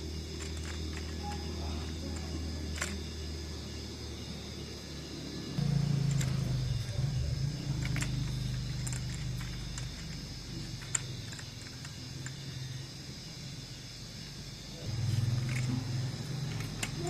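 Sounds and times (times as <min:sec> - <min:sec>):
model train engine hum: 0:00.0 - 0:17.0
wheel clicks on track: 0:05.6 - 0:12.4.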